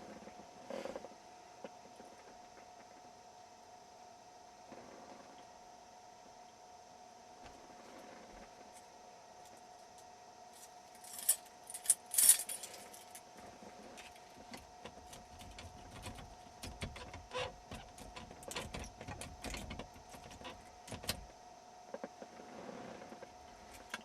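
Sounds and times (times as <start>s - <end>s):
metal keys rattling in a lock: 11.0s - 13.3s.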